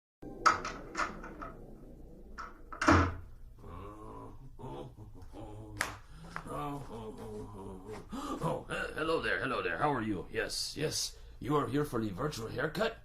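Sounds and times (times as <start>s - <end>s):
door thud: 2.4s - 3.3s.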